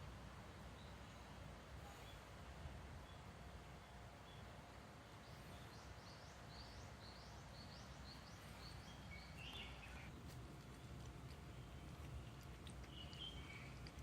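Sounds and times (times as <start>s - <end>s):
low background rumble: 0.0s - 14.0s
small bird chirping: 5.2s - 14.0s.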